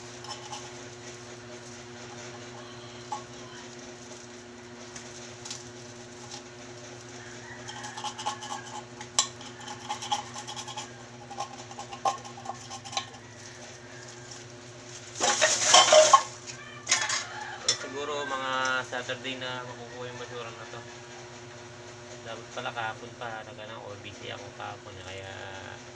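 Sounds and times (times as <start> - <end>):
cans clinking into containers: 7.6 - 13.2, 15.2 - 17.9.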